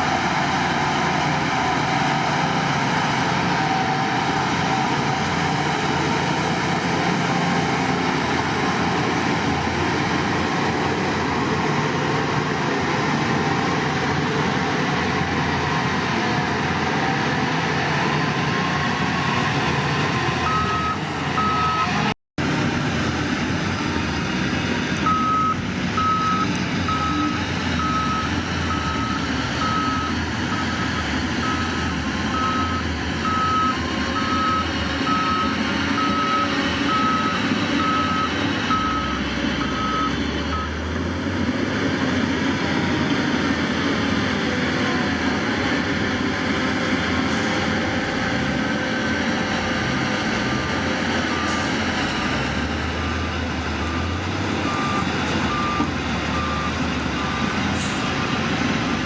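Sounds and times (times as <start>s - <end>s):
diesel machinery running: 0.0s - 59.0s
reversing alarm beeping: 20.4s - 22.1s, 25.0s - 40.8s, 53.0s - 58.5s.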